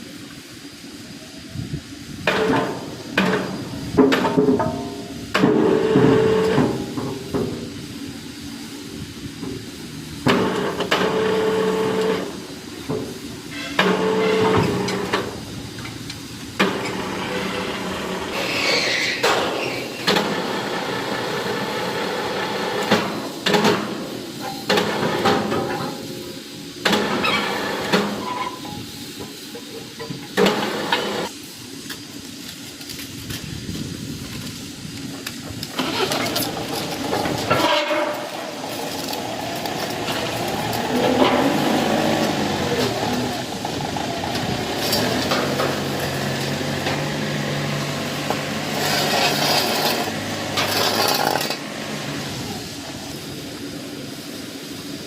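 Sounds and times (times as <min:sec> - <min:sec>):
factory machinery humming and clattering: 0:00.0 - 0:55.0.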